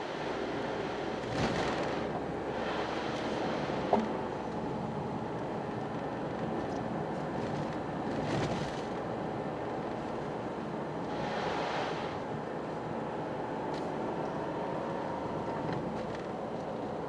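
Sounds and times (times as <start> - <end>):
road and tyre noise: 0.0 - 17.0.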